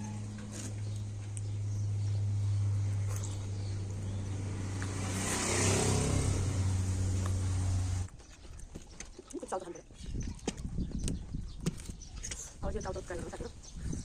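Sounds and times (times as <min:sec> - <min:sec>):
vehicle engine humming: 0:00.0 - 0:08.2.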